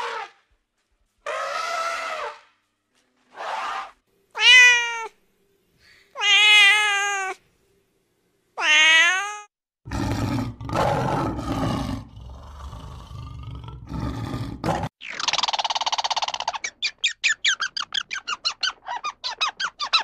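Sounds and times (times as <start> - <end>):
cat meowing: 4.4 - 5.2, 6.2 - 7.4, 8.6 - 9.5
lion roaring and growling: 9.9 - 14.9.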